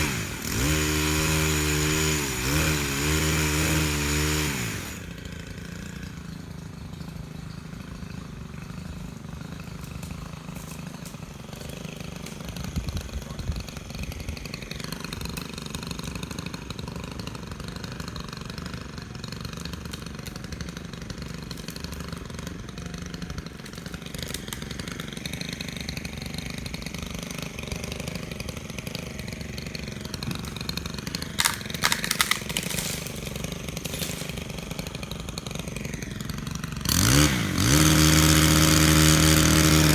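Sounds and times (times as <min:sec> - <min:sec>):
chainsaw engine idling: 0:00.0 - 0:39.9.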